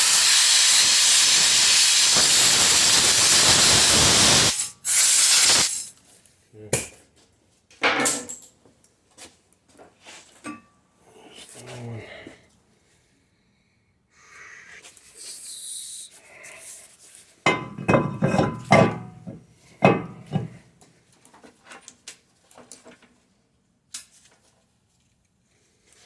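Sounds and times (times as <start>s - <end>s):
short hiss: 0.0s - 5.9s, 14.3s - 16.2s.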